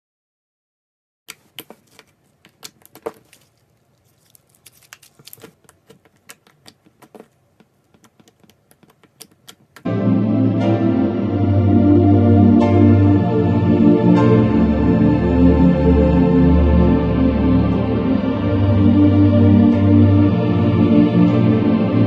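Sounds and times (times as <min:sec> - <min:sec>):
blade cutting stress ball: 0:01.3 - 0:09.9
background music: 0:09.9 - 0:22.0.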